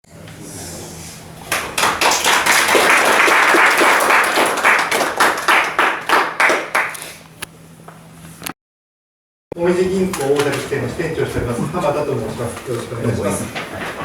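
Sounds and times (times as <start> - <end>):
audience clapping: 1.4 - 7.2.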